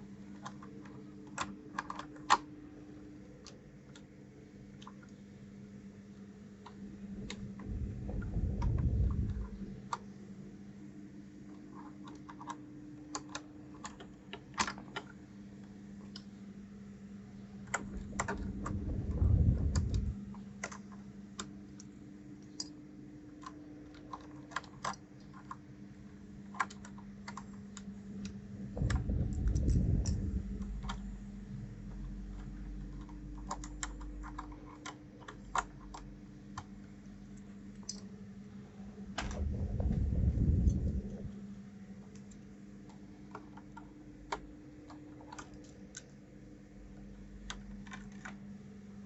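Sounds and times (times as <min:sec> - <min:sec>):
steady low hum: 0:00.0 - 0:49.0
mechanical keyboard typing: 0:00.3 - 0:02.5, 0:17.7 - 0:21.8, 0:23.4 - 0:25.6, 0:26.4 - 0:31.1, 0:31.9 - 0:36.8
low rumble: 0:07.1 - 0:09.8, 0:17.8 - 0:20.3, 0:28.2 - 0:32.2, 0:39.1 - 0:41.6.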